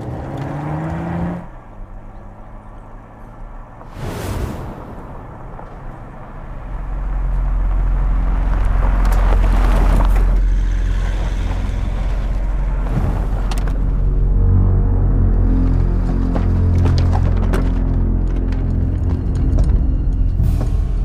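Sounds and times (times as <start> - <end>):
deep steady rumble: 1.5 - 21.0
brief whoosh: 3.8 - 6.2.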